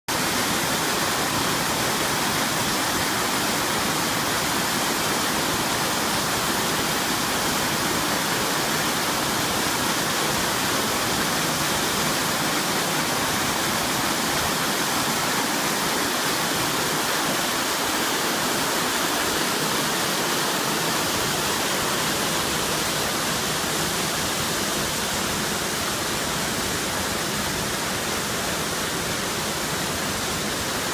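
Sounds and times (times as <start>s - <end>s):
waterfall rushing: 0.1s - 30.9s.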